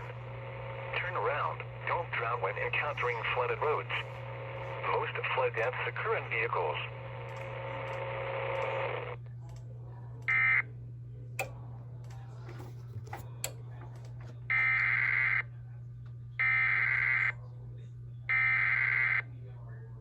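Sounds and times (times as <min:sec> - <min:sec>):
steady low hum: 0:00.0 - 0:20.0
scattered clicks: 0:07.1 - 0:10.4, 0:11.4 - 0:14.9.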